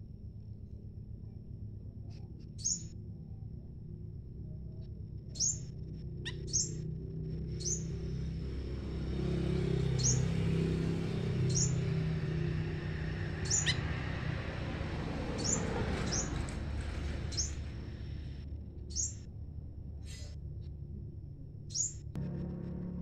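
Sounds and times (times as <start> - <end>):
steady low hum: 0.0 - 9.2, 16.4 - 23.0
songbirds chirping: 2.1 - 2.9, 5.3 - 5.7, 6.3 - 18.2, 18.9 - 19.3, 21.7 - 22.1.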